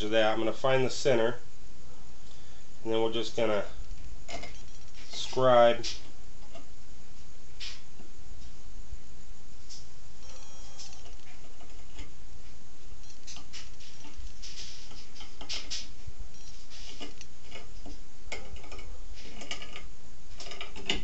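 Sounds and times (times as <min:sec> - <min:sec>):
low steady hum: 0:00.0 - 0:21.0
marking tool scratching on wood: 0:13.2 - 0:19.8.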